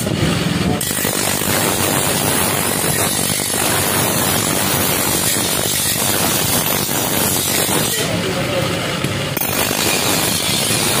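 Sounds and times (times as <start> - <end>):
harsh mechanical running noise: 0.0 - 11.0
strong hiss: 0.8 - 8.2.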